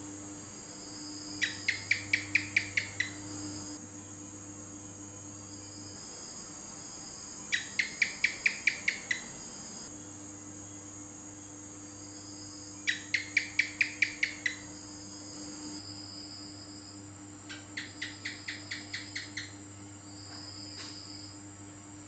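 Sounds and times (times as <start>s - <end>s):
gecko chirping: 1.4s - 3.8s, 7.5s - 9.4s, 12.9s - 14.7s, 17.5s - 19.6s.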